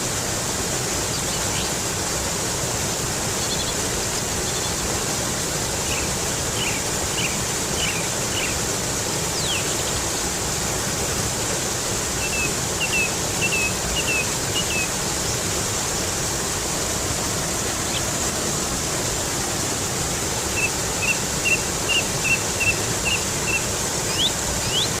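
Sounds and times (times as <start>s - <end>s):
stream running over rocks: 0.0s - 25.0s
songbird chirping: 20.6s - 25.0s.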